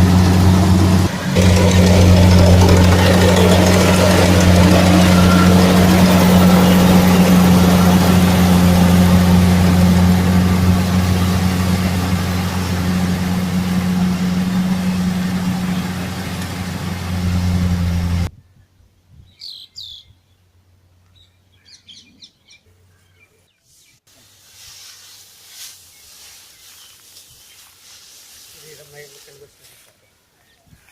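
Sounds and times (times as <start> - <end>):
harvester engine droning: 0.0 - 18.3.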